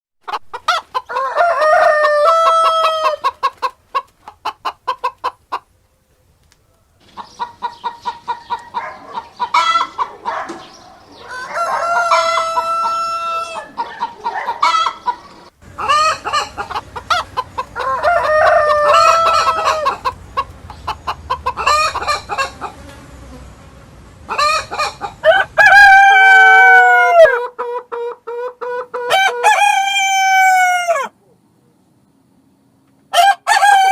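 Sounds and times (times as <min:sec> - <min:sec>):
hens clucking: 0:00.2 - 0:05.8, 0:06.6 - 0:31.4
roosters crowing: 0:00.6 - 0:03.5, 0:06.8 - 0:27.6, 0:28.8 - 0:31.2, 0:33.1 - 0:33.9.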